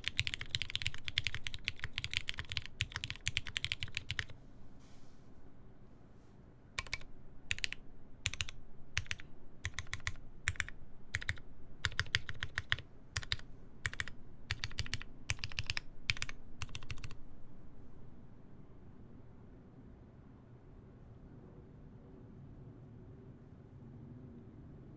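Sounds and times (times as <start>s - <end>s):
mechanical keyboard typing: 0.0s - 4.4s, 6.8s - 17.2s.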